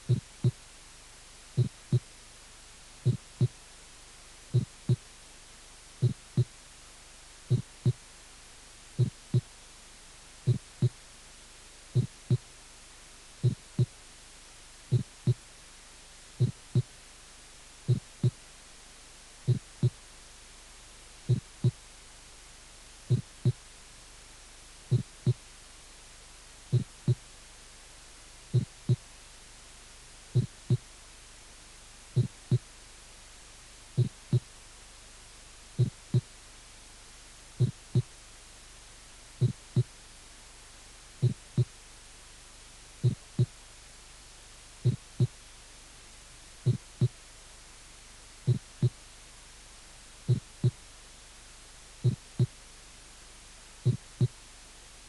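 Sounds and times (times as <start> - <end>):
heartbeat dull thumps: 0.0 - 0.6, 1.5 - 2.1, 3.0 - 3.6, 4.5 - 5.1, 6.0 - 6.6, 7.4 - 8.0, 9.0 - 9.6, 10.4 - 11.0, 11.9 - 12.5, 13.4 - 14.0, 14.9 - 15.5, 16.4 - 17.0, 17.8 - 18.4, 19.4 - 20.0, 21.2 - 21.8, 23.0 - 23.6, 24.9 - 25.4, 26.7 - 27.2, 28.5 - 29.1, 30.3 - 30.9, 32.1 - 32.7, 33.9 - 34.5, 35.8 - 36.3, 37.6 - 38.2, 39.4 - 39.9, 41.2 - 41.8, 43.0 - 43.6, 44.8 - 45.4, 46.6 - 47.2, 48.4 - 49.0, 50.2 - 50.8, 52.0 - 52.6, 53.8 - 54.4.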